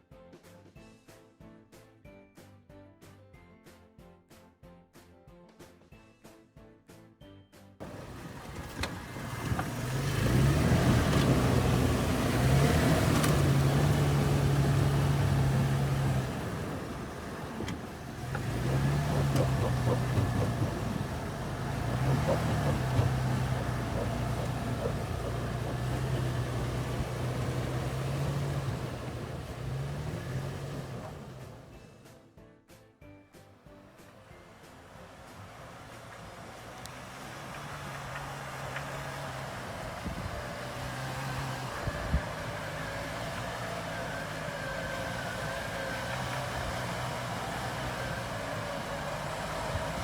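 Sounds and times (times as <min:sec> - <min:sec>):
engine working under throttle: 0:07.8 - 0:32.0, 0:34.5 - 0:50.0.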